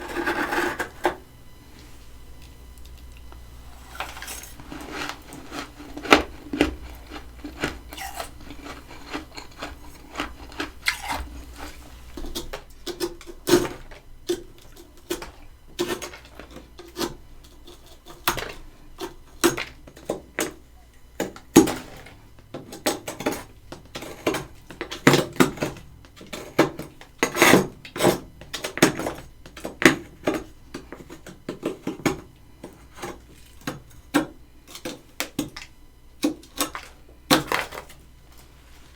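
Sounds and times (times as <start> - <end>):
frost crunching and scraping: 0.0 - 35.7, 36.3 - 38.9.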